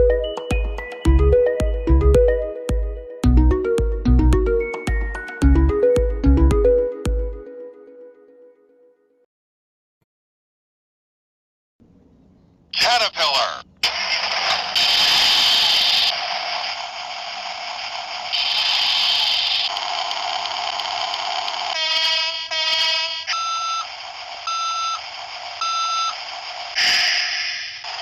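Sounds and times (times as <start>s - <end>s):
bursts of hissing noise: 13.8s - 28.0s
phone ringtone beeps: 22.0s - 23.9s, 24.5s - 25.0s, 25.6s - 26.2s.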